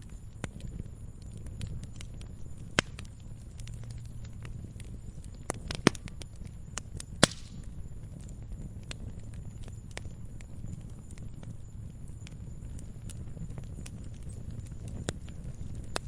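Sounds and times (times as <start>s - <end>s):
campfire crackling: 0.0s - 16.0s
loud sharp pops: 7.2s - 7.7s.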